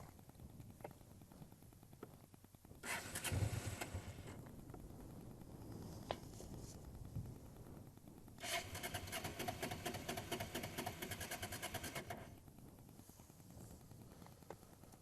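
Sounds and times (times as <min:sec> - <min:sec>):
starter motor cranking: 0:08.4 - 0:12.3.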